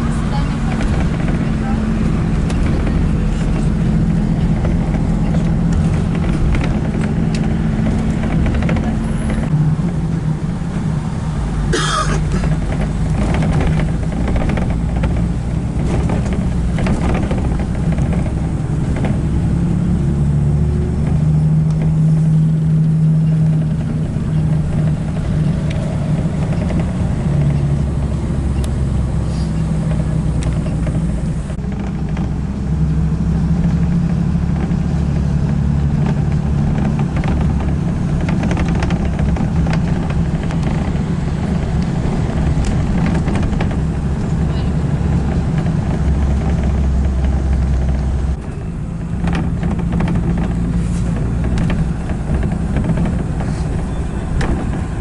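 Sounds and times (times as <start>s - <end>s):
car engine drone: 0.0s - 55.0s
road noise: 0.0s - 55.0s.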